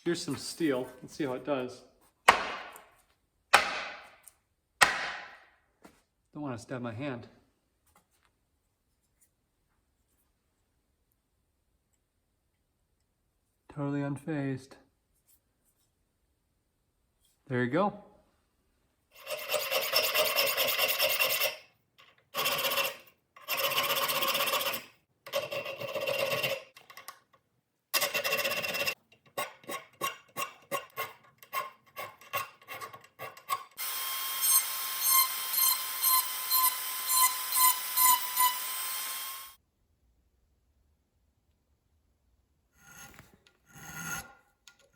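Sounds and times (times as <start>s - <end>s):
rasping on knife steel: 19.2s - 21.6s, 28.0s - 33.7s.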